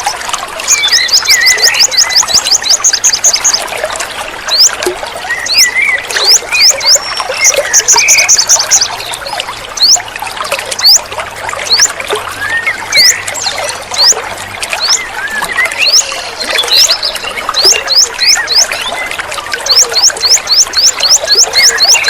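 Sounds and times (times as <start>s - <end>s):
low warbling bird calls: 0.0s - 3.8s, 4.4s - 22.0s
trickling water: 0.0s - 22.0s
birds chirping and whistling: 0.6s - 3.6s, 4.5s - 10.0s, 10.8s - 11.1s, 11.7s - 14.2s, 14.8s - 22.0s
bird trill: 0.7s - 3.6s, 5.3s - 8.9s, 14.8s - 22.0s.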